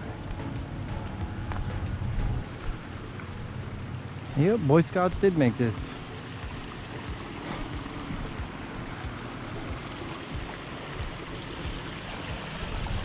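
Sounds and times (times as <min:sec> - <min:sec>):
flowing water rushing: 0:00.0 - 0:13.0
wind buffeting microphone: 0:05.0 - 0:13.0.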